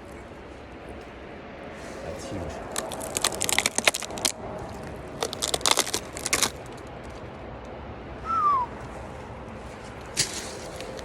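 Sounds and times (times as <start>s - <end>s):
footsteps crunching through leaves: 1.8s - 6.7s, 9.0s - 11.0s.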